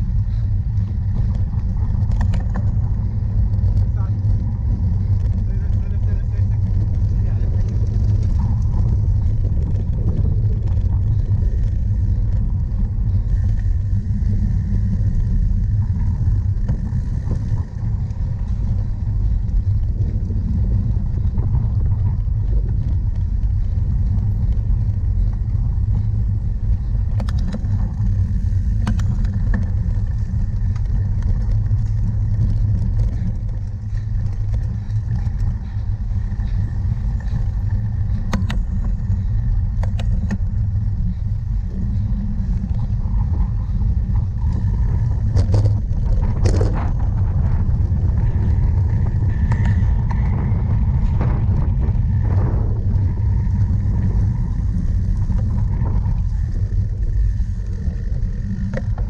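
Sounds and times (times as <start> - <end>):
bike riding vibration: 0.0 - 59.0
wind buffeting: 0.0 - 59.0
sharp clicks and knocks: 38.2 - 39.0.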